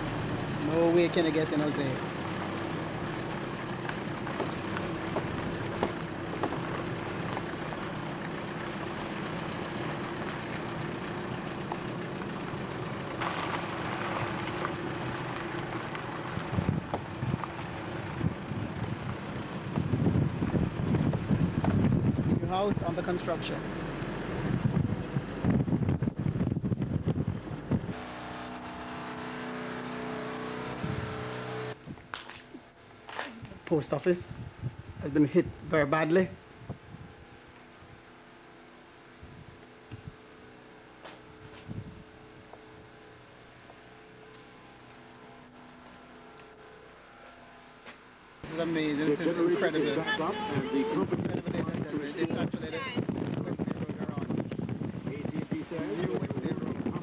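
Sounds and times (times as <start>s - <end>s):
car engine and road noise: 0.0s - 57.0s
wind buffeting microphone: 16.1s - 22.8s, 24.3s - 28.0s, 34.2s - 38.1s, 39.2s - 40.2s, 41.4s - 42.2s, 50.2s - 57.0s.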